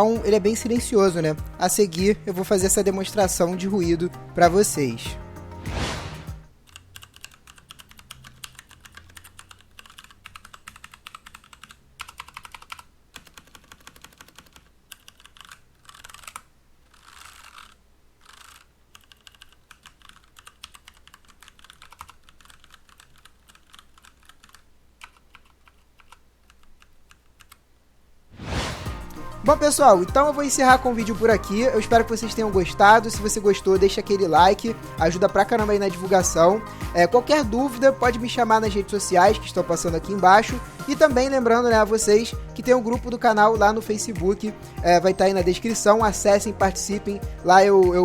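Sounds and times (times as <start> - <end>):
mechanical keyboard typing: 6.7 - 27.6.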